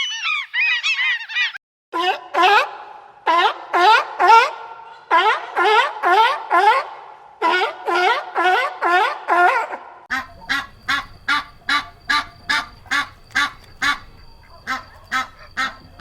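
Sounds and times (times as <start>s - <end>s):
short repeated animal calls: 0.0s - 2.5s, 10.1s - 16.0s
animal calls sweeping upward: 0.0s - 16.0s
faint steady high tone: 10.2s - 16.0s.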